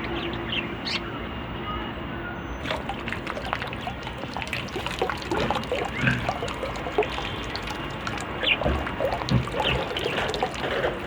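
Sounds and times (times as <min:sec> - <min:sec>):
birds splashing in water: 0:02.5 - 0:11.0
water trickling: 0:02.6 - 0:11.0.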